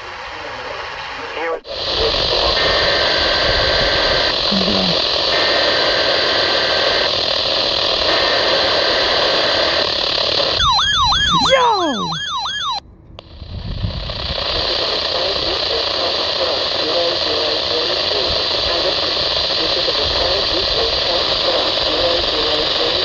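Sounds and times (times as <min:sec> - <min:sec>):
radio static hiss: 0:00.0 - 0:13.4, 0:14.1 - 0:23.0
rapid falling chirps: 0:10.6 - 0:12.8.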